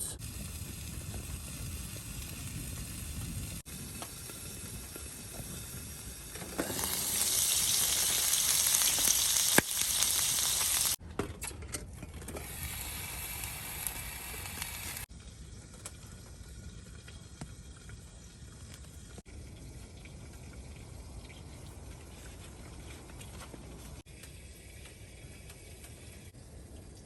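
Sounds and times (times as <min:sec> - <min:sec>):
food sizzling in a pan: 0:00.2 - 0:11.0, 0:12.4 - 0:15.1.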